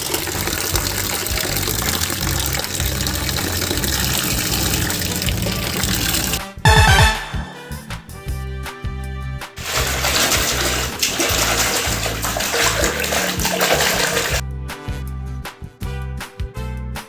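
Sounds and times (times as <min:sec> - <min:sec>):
running water: 0:00.0 - 0:07.0, 0:09.6 - 0:14.4
background music with steady beat: 0:06.4 - 0:17.0.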